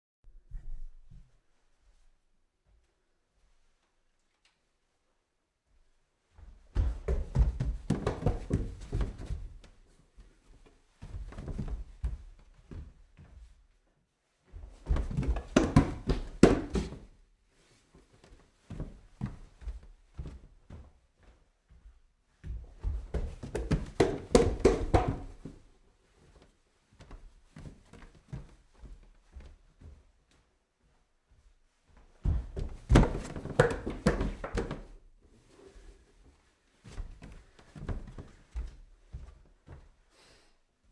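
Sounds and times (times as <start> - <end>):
footsteps climbing stairs: 6.7 - 9.7, 14.8 - 17.0, 22.4 - 25.6, 32.2 - 35.0.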